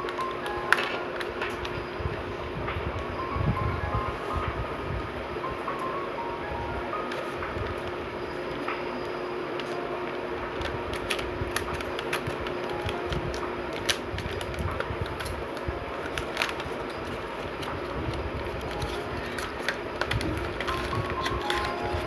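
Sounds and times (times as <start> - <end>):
packaging clicks and crinkles: 0.0 - 2.2, 6.9 - 22.0.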